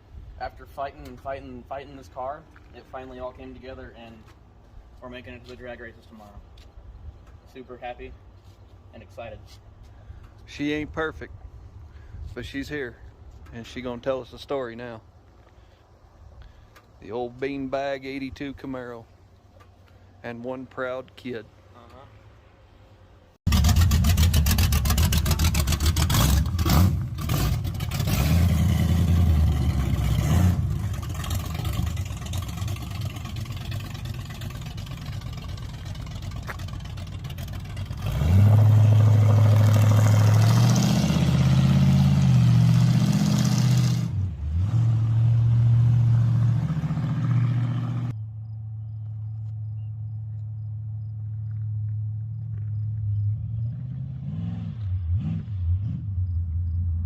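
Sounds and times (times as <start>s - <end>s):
loud rough car engine revving: 23.5s - 48.1s, 53.4s - 56.2s.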